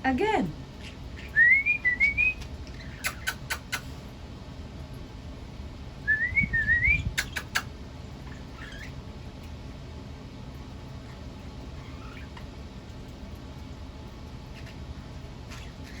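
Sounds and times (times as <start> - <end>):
sharp clicks: 2.4 - 3.9, 7.2 - 7.7.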